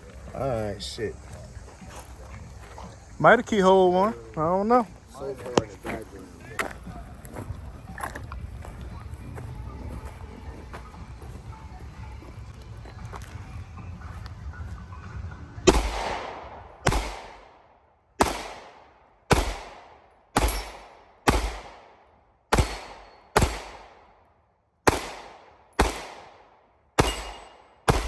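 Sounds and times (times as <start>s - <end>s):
gunshots with echo: 15.6s - 24.2s, 24.8s - 28.0s.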